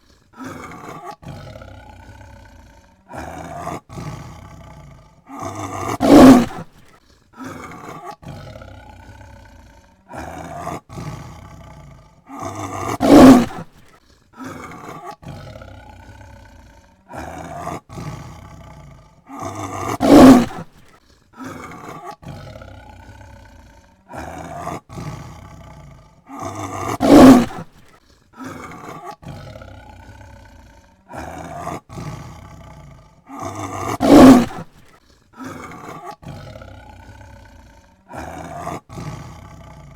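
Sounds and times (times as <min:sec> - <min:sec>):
tiger roaring: 0:00.0 - 0:39.9
quieter tiger calls: 0:05.3 - 0:06.7, 0:12.3 - 0:13.8, 0:19.4 - 0:20.8, 0:26.4 - 0:27.7, 0:33.4 - 0:34.7.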